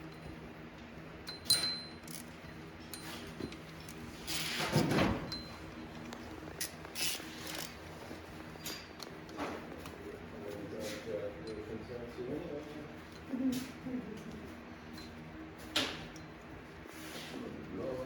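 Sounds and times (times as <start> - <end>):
metal parts clinking: 1.3 - 2.4.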